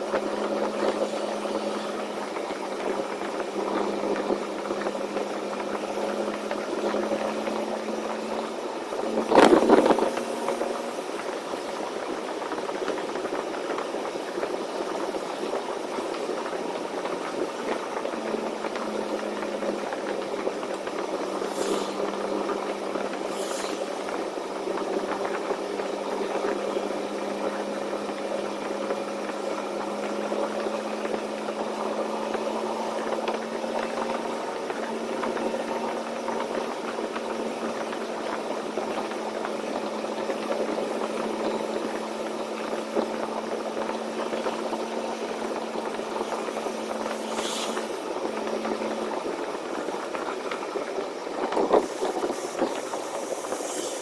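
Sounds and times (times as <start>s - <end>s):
road noise: 0.0s - 54.0s
semi-truck engine drone: 0.0s - 54.0s
air brake hisses: 47.2s - 48.0s.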